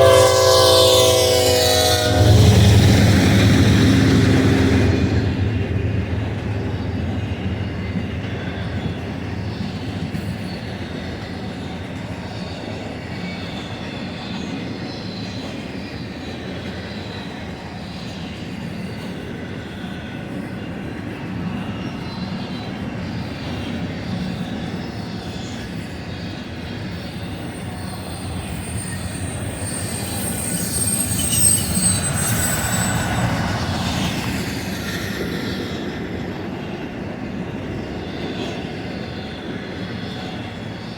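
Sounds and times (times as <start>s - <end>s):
high wheel squeal: 0.0s - 17.3s, 24.2s - 36.8s
freight train wheels rumbling: 0.0s - 40.9s.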